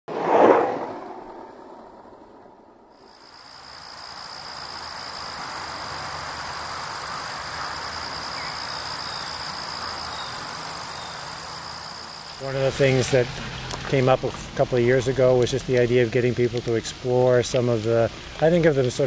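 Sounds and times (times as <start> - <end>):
insects trilling: 3.0 - 19.0
loud sound dying away: 12.2 - 17.5.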